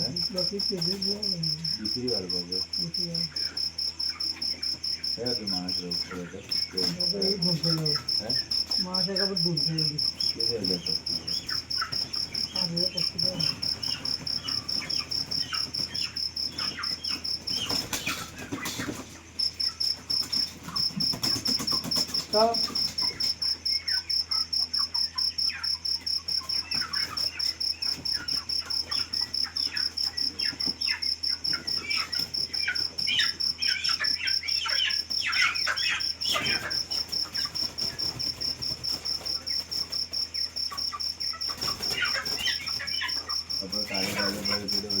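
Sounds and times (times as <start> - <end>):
chickens giving short calls: 0.0 - 45.0
cricket chirping: 0.0 - 45.0.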